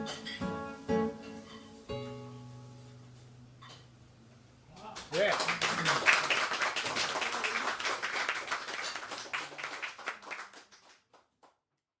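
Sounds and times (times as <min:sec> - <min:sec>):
audience clapping: 0:04.8 - 0:11.6.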